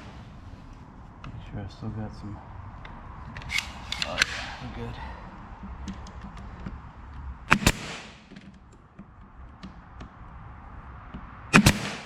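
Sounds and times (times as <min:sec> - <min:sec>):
nail gun firing: 0:07.5 - 0:08.4, 0:11.5 - 0:12.0.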